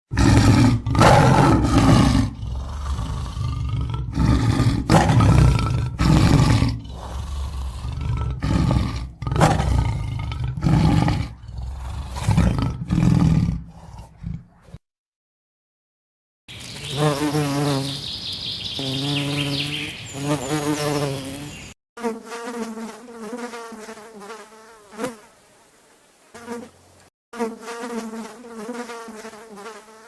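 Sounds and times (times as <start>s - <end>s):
big cat roaring and growling: 0.1s - 14.8s.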